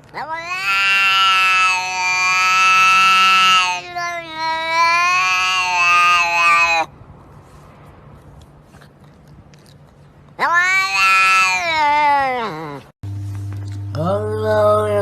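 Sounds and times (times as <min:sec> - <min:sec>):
cat meowing: 0:00.1 - 0:06.9, 0:10.4 - 0:12.9.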